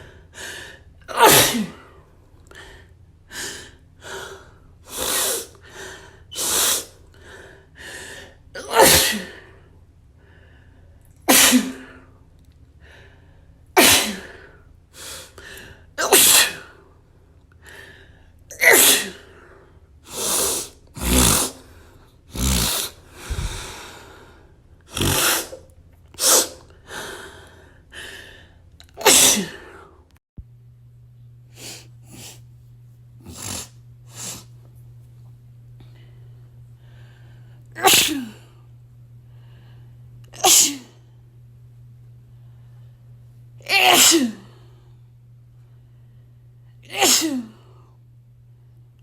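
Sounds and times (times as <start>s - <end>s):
person sneezing: 1.0s - 1.9s, 4.9s - 5.6s, 6.4s - 7.0s, 8.6s - 9.4s, 11.3s - 12.0s, 13.8s - 14.4s, 16.0s - 16.8s, 18.5s - 19.3s, 20.1s - 21.6s, 22.3s - 23.9s, 24.9s - 26.7s, 28.9s - 29.9s, 31.6s - 32.4s, 33.2s - 34.5s, 37.8s - 38.4s, 40.4s - 41.0s, 43.7s - 44.6s, 46.9s - 47.6s.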